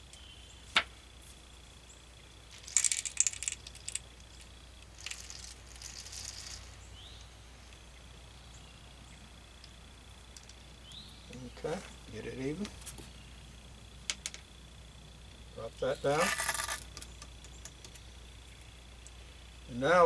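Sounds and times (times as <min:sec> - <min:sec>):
pellets rattling and clinking: 0:02.5 - 0:06.8, 0:16.1 - 0:17.2.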